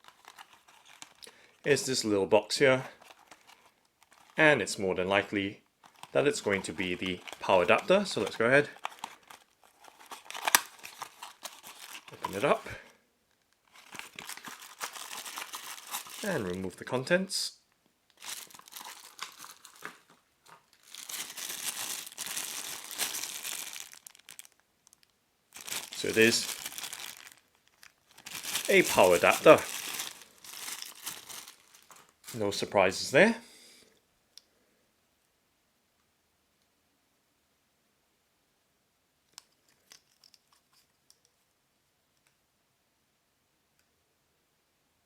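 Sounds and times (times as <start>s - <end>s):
packaging crinkling and rustling: 0.0s - 1.6s, 2.9s - 4.4s, 5.8s - 12.8s, 13.4s - 16.3s, 18.1s - 32.4s
soft plastic clicks and crinkles: 0.0s - 1.7s, 3.0s - 4.4s, 5.7s - 16.2s, 23.8s - 25.2s, 39.2s - 42.4s.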